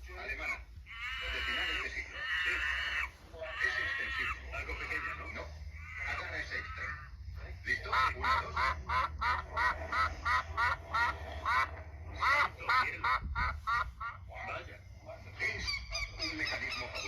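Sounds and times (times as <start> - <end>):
duck quacking: 0.4 - 7.1, 7.7 - 14.2.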